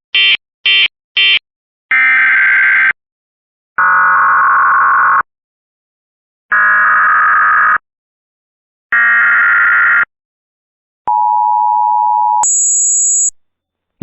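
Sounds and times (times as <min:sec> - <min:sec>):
two-tone attention signal: 0:11.1 - 0:13.3.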